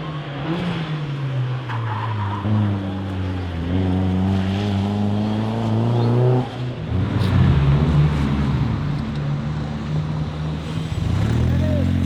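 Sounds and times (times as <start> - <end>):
car engine revving: 3.4 - 12.0.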